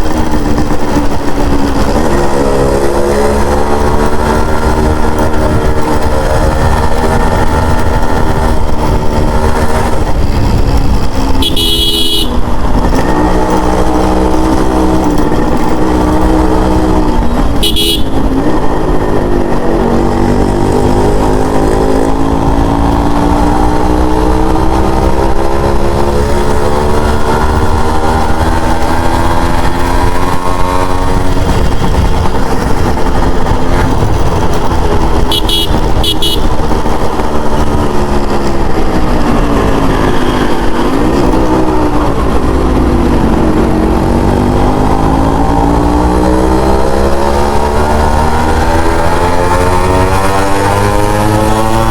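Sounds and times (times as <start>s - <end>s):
motorcycle engine accelerating: 0.0s - 51.9s
horn toots: 11.4s - 12.5s, 17.5s - 18.3s, 35.2s - 36.8s.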